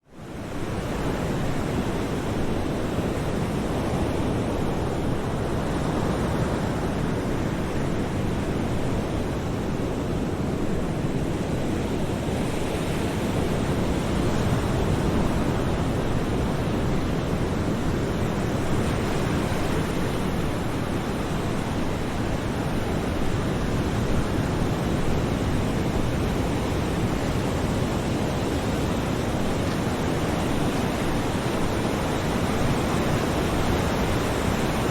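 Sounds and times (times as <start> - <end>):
ocean waves breaking: 11.2 - 34.9.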